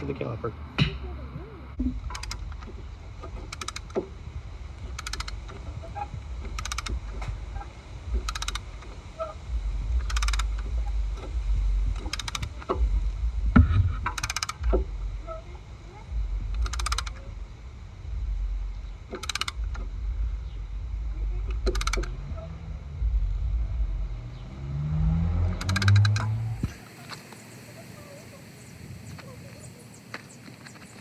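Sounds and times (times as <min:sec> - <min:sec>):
ratchet wrench clicking: 0:02.0 - 0:04.2, 0:04.8 - 0:05.8, 0:06.4 - 0:13.2, 0:14.0 - 0:14.8, 0:16.3 - 0:17.3, 0:19.1 - 0:20.0, 0:21.5 - 0:22.2, 0:25.5 - 0:27.2.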